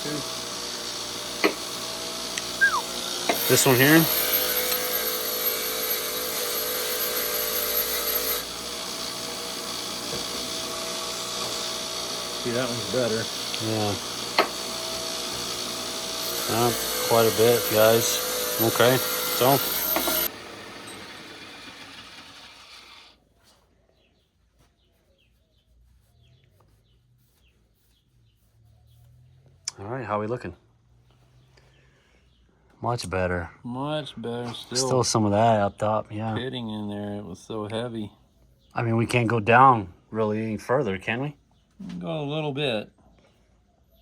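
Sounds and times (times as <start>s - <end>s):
valve grinding machine grinding: 0.0s - 23.1s
small birds chirping: 2.4s - 4.0s, 23.5s - 33.1s
machine whine: 10.0s - 22.8s.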